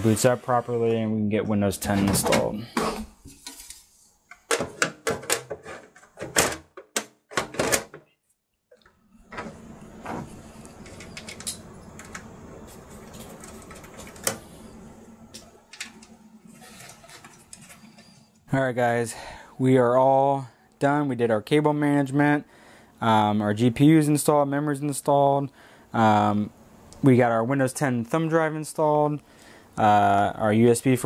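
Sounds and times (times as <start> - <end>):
steady low hum: 8.9 - 23.8
computer case panels clicking: 13.0 - 14.5.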